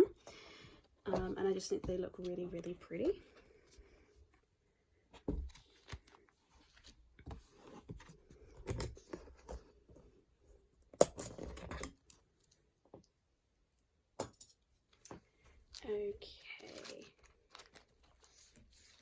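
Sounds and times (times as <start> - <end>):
plastic sleeves rustling and crinkling: 15.5 - 19.0.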